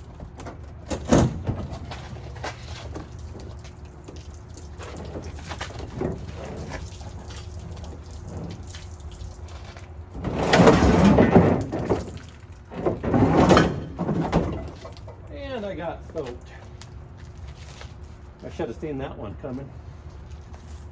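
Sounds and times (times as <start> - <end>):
water splashing and gushing: 3.8 - 12.7.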